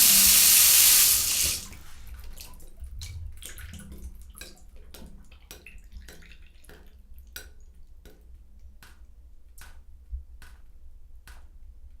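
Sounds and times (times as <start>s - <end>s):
water trickling: 0.0s - 7.0s
water dripping from shower: 0.0s - 11.5s.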